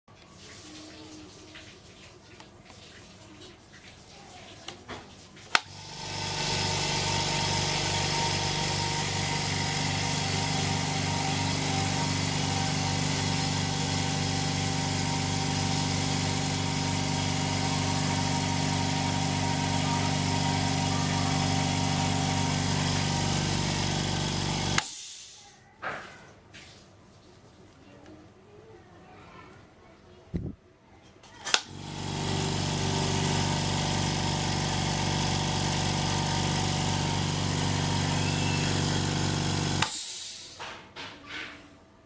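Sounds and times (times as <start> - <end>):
air compressor humming: 5.5 - 25.4, 31.5 - 40.7.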